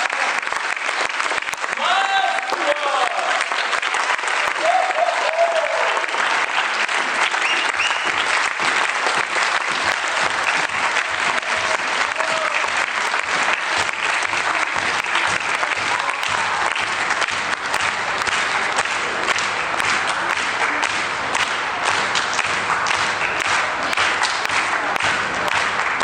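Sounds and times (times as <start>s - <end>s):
audience applauding: 0.0s - 26.0s.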